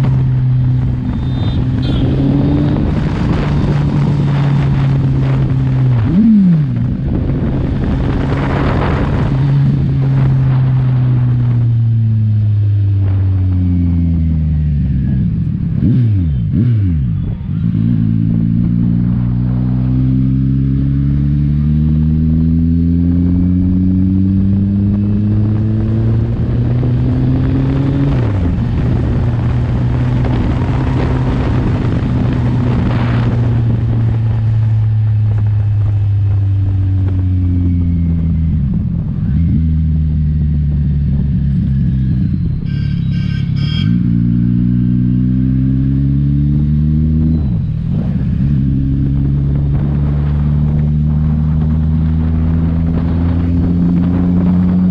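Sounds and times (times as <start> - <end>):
wind rush: 0.0 - 16.2, 16.8 - 54.9
motorcycle engine accelerating: 0.0 - 54.9
short high-pitched beeps: 42.5 - 44.1.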